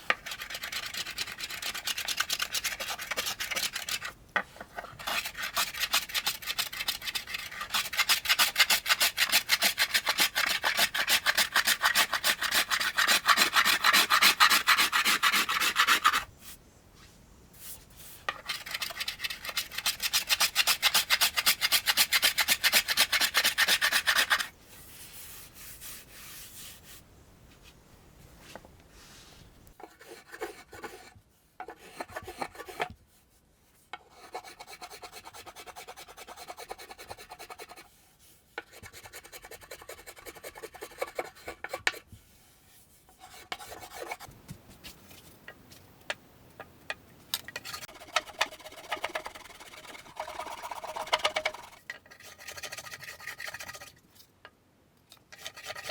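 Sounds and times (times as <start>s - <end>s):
rasp shaping wood: 0.0s - 16.3s, 18.3s - 24.5s, 47.6s - 53.9s, 55.3s - 55.9s.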